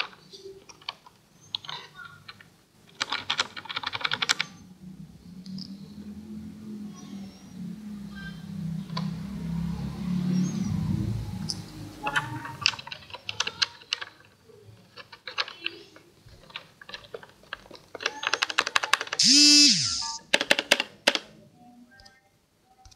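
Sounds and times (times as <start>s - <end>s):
mechanical keyboard typing: 0.0s - 4.6s, 12.1s - 14.2s, 14.9s - 15.8s, 16.4s - 21.2s.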